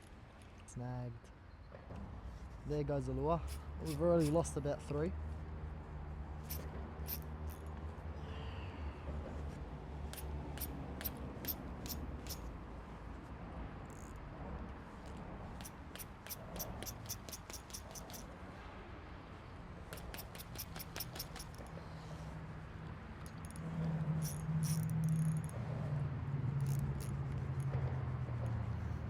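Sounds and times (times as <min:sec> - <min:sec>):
fishing reel ticking: 0:10.2 - 0:12.4, 0:24.2 - 0:25.5.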